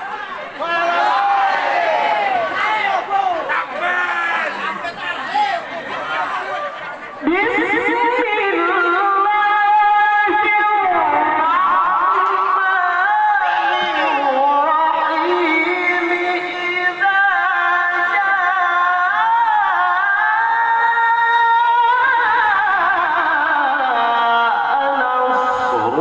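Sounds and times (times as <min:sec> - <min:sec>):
man reciting melodically: 0:08.7 - 0:26.0.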